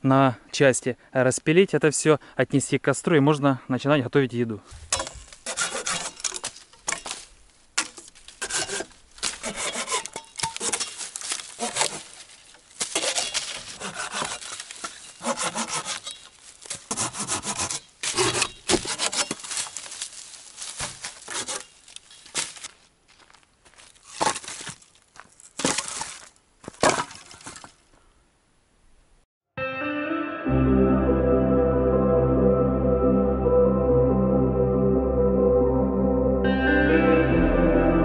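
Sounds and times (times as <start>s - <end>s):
hand saw cutting branch: 4.9s - 7.2s, 7.8s - 19.8s, 20.8s - 21.8s.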